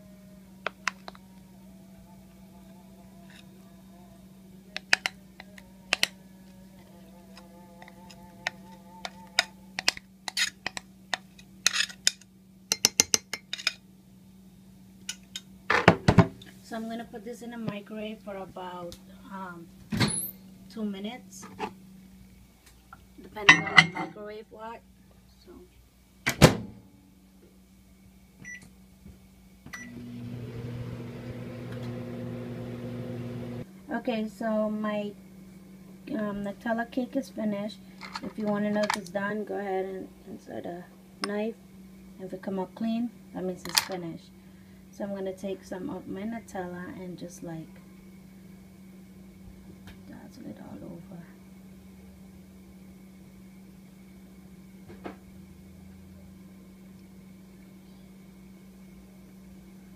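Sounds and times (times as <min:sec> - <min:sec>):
microwave humming: 0:29.6 - 0:36.5.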